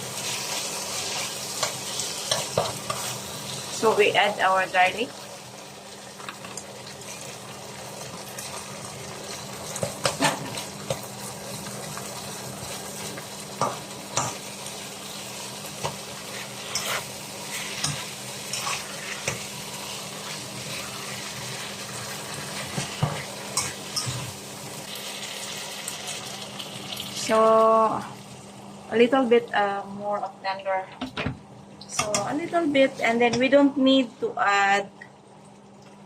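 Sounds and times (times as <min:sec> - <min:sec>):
stir-fry sizzling in oil: 0:00.0 - 0:29.4
spatula scraping pan: 0:00.2 - 0:03.3, 0:15.8 - 0:24.4.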